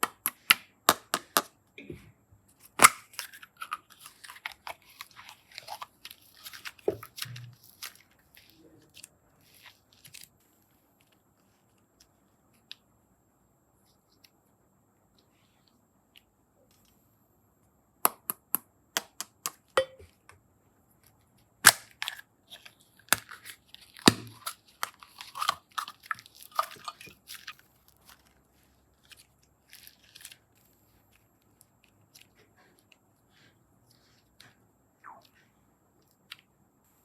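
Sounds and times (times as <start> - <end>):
clay and slime handling clicks: 18.1 - 20.4.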